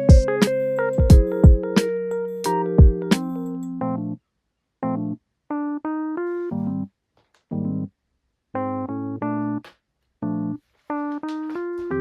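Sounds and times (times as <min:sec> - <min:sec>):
lo-fi electric piano chords: 0:00.0 - 0:04.2, 0:04.8 - 0:06.9, 0:07.5 - 0:07.9, 0:08.5 - 0:12.0.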